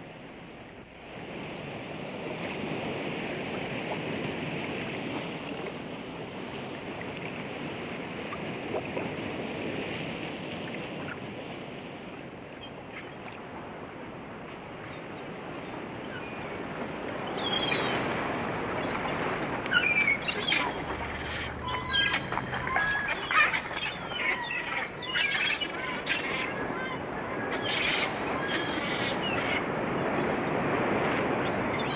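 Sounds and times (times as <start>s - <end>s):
ocean waves: 0.0s - 31.9s
birds calling and squawking: 19.7s - 30.6s.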